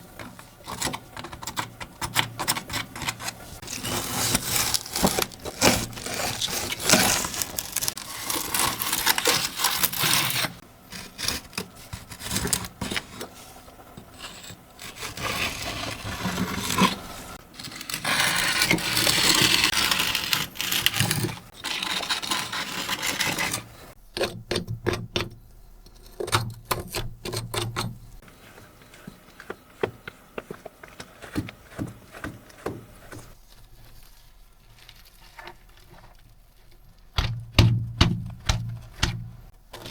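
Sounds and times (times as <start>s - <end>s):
scrubbing a keyboard: 28.2s - 35.8s.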